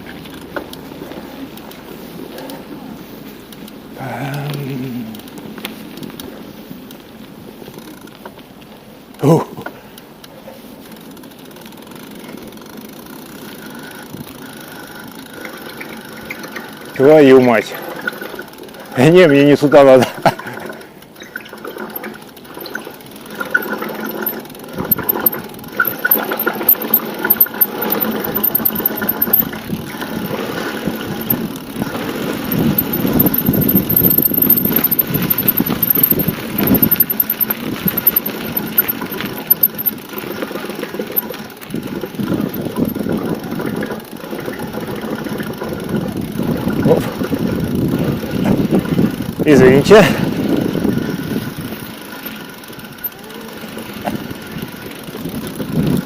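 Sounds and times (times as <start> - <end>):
bicycle rattling: 0.0 - 56.0
bicycle tyre rumble: 0.0 - 56.0
wind buffeting microphone: 41.6 - 52.0, 54.0 - 56.0.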